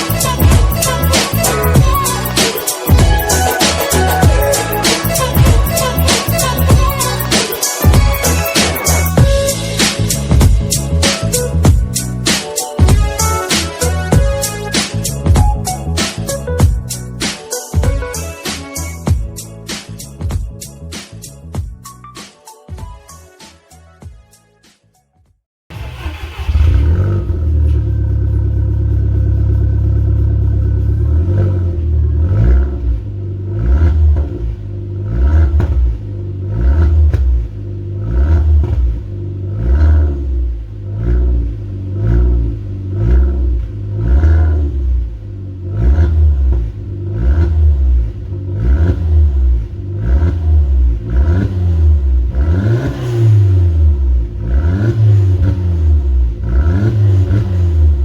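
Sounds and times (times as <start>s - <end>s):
car engine revving through exhaust: 25.7s - 58.0s.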